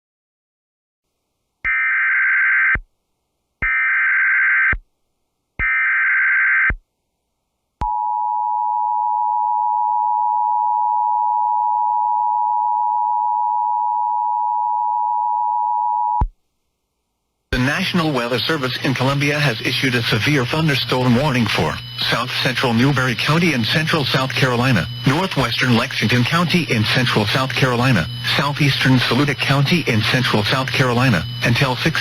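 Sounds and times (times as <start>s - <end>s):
steady warning alarm tone: 5.6s - 6.7s, 17.6s - 32.0s
buzzing data tone bursts: 5.6s - 6.8s, 17.6s - 32.0s.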